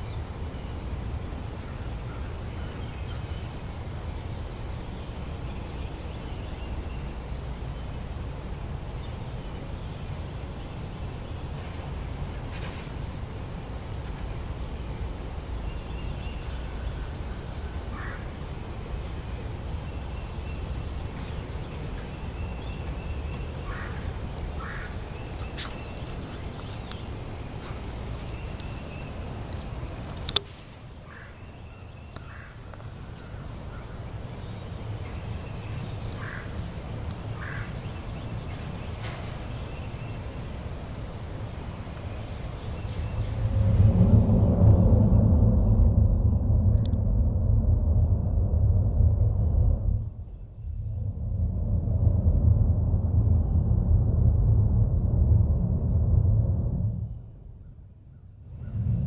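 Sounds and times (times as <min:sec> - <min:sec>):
deep low engine rumble: 0:00.0 - 0:59.0
bird calls: 0:15.6 - 0:40.5.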